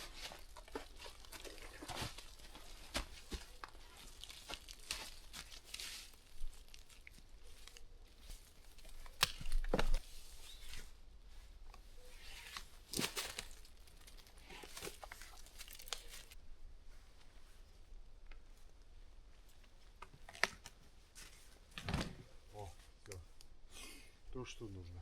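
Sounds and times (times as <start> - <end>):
dry leaves and twigs rustling: 0.0 - 23.6
loud twig cracks: 6.5 - 10.0.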